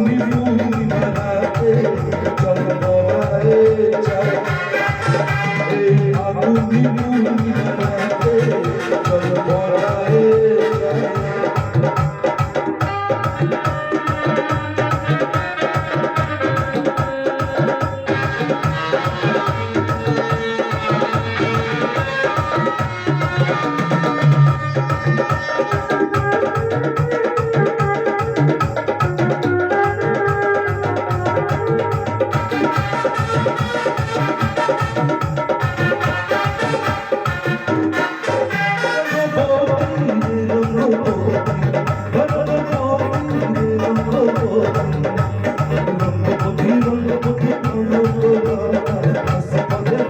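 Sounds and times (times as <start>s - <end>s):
hand drum rhythm: 0.0s - 50.0s.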